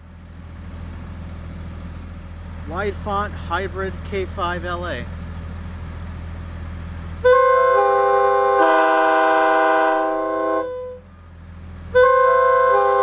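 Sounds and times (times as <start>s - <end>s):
steady low hum: 0.0s - 13.0s
locomotive air horn: 7.2s - 11.1s, 11.9s - 13.0s.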